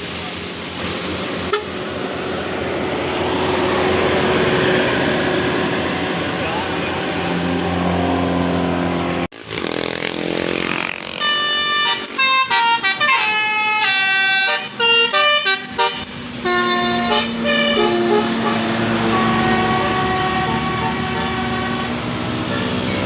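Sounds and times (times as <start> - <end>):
bus engine running: 0.0 - 23.0
musical bus horn tune: 1.4 - 2.0, 11.2 - 22.5.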